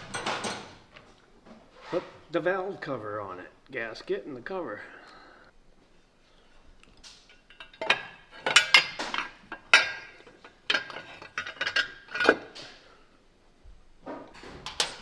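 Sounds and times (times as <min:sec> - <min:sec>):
metal parts clinking and clanking: 0:00.0 - 0:01.2, 0:07.0 - 0:12.8, 0:14.6 - 0:15.0.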